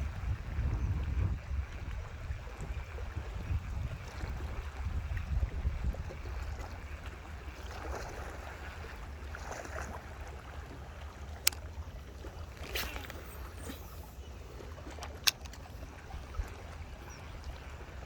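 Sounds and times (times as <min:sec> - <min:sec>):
wind rumbling on microphone: 0:00.0 - 0:08.9
water noise: 0:00.0 - 0:18.0
brief rustles or splashes: 0:09.4 - 0:17.2.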